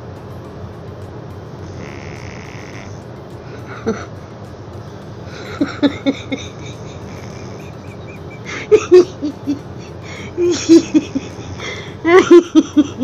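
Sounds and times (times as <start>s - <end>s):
dog snoring: 1.5s - 3.1s, 6.4s - 8.3s, 10.9s - 11.8s.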